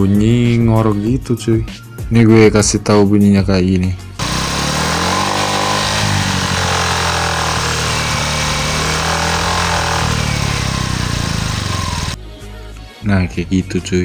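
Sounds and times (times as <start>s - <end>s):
fender rattling: 4.2s - 12.2s
scooter engine running: 4.2s - 12.2s.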